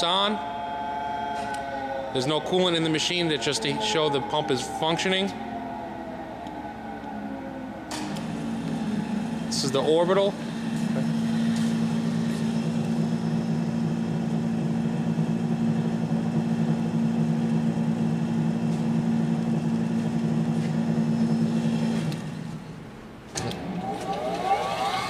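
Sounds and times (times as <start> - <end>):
grinder motor humming: 8.0 - 22.6.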